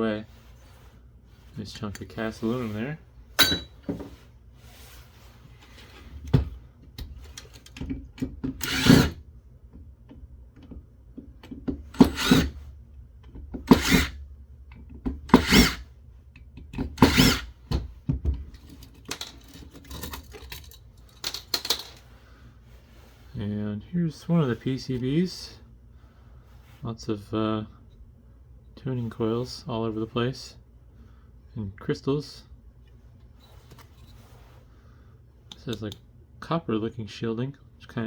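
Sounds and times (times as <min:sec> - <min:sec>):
metal parts clicking and tapping: 0:07.0 - 0:09.2, 0:18.4 - 0:22.0
power screwdriver spinning: 0:08.6 - 0:09.2, 0:12.0 - 0:12.6, 0:13.7 - 0:14.1, 0:17.0 - 0:17.4.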